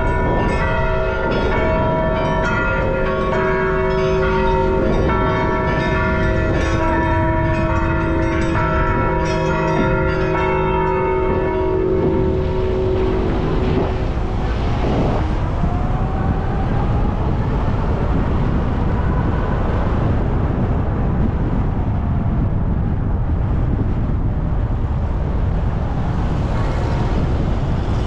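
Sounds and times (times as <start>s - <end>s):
road traffic rumble: 0.0s - 28.0s.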